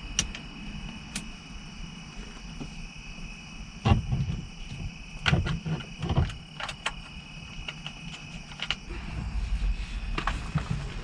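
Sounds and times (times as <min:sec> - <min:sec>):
parts clicking and rattling: 0:03.8 - 0:08.9
faint high hum: 0:06.3 - 0:11.0.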